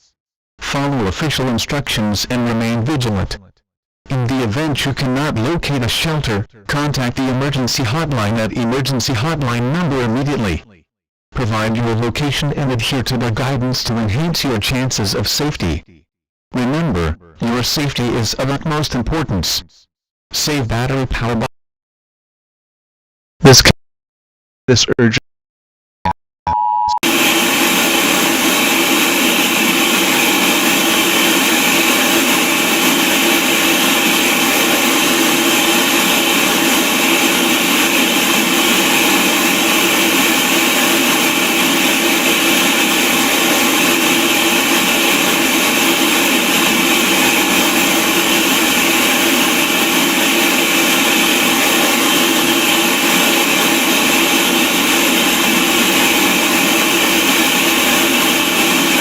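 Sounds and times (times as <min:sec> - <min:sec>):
electronic tone: 0:26.5 - 0:59.0.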